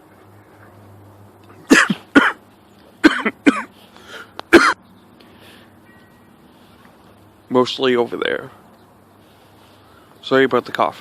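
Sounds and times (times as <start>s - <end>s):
man coughing: 1.7s - 2.4s, 3.0s - 3.7s, 4.5s - 4.8s.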